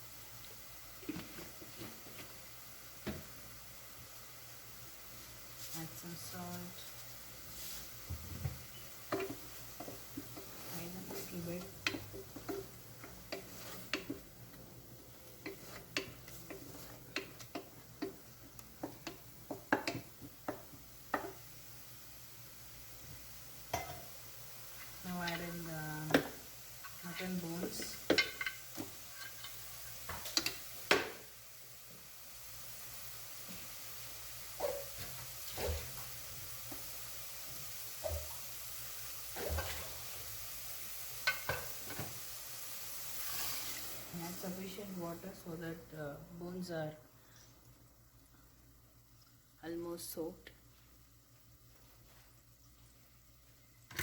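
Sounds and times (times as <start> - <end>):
masala sizzling in a pan: 0.0 - 54.0
bones moved in a pan: 26.8 - 30.6
ticks from frying pan: 30.1 - 31.2, 41.2 - 42.1.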